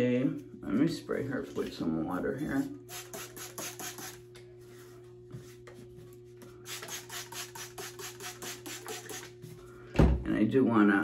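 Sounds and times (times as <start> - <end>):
spray bottle squirts: 6.7 - 9.4.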